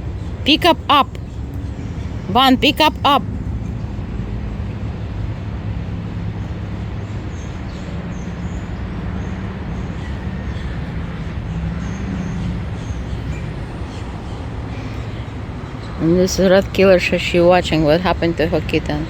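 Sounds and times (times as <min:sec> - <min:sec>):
engine rumbling: 0:00.0 - 0:19.0.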